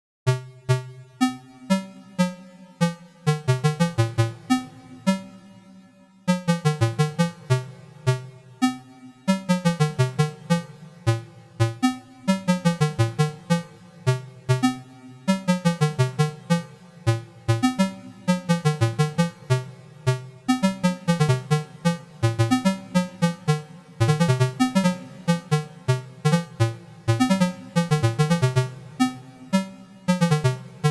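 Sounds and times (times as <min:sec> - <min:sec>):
plucked synthesizer electronic music: 0:00.3 - 0:30.9.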